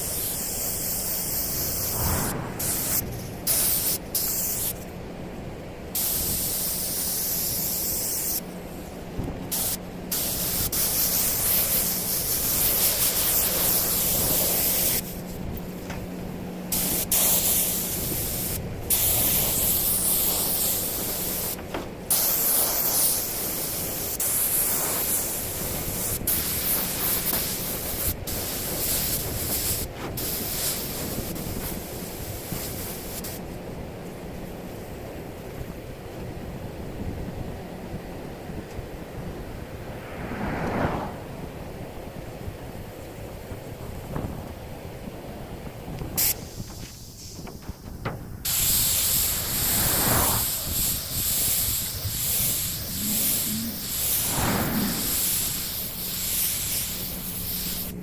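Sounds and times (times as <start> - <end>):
paint spray hissing: 0.0 - 4.7, 6.0 - 8.4, 9.5 - 15.1, 16.7 - 33.4, 46.2 - 47.8, 48.4 - 58.0
steady low hum: 1.0 - 5.9, 52.1 - 56.1.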